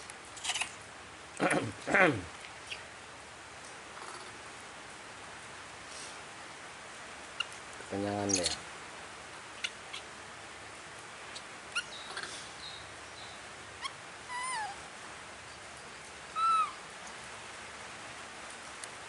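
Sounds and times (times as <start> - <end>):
baby monkey squeaking and cooing: 0.4 - 0.8, 8.3 - 8.6, 11.3 - 12.8, 13.8 - 14.8, 16.4 - 16.8.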